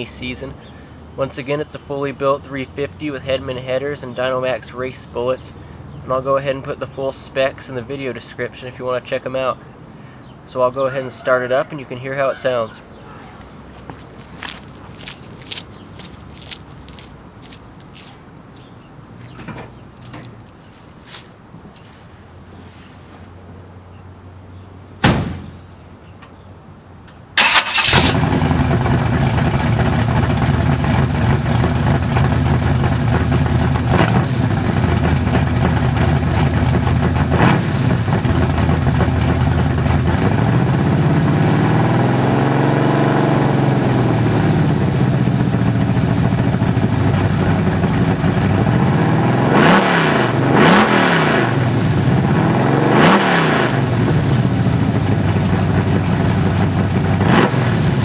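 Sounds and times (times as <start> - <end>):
vvery loud engine idling and revving: 27.4 - 58.0.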